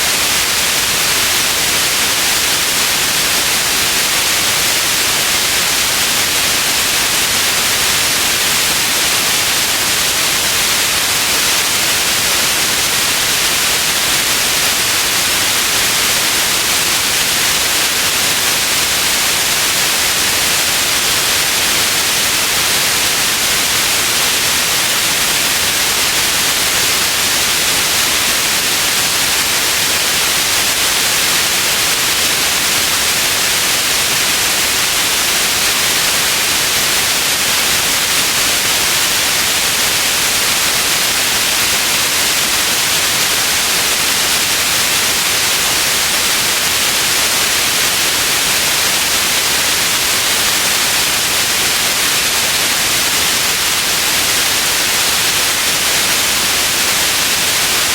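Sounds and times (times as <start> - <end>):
steady white noise: 0.0 - 57.9.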